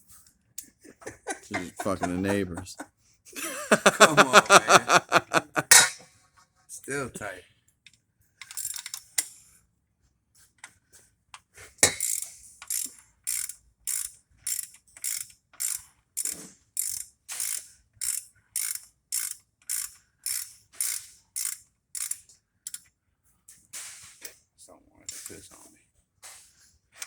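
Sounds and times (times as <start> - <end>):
ratchet wrench clicking: 8.4 - 9.0, 11.8 - 22.8.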